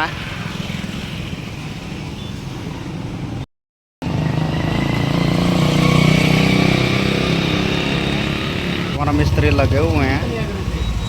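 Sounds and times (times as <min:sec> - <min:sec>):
motorcycle engine running: 0:04.0 - 0:11.0.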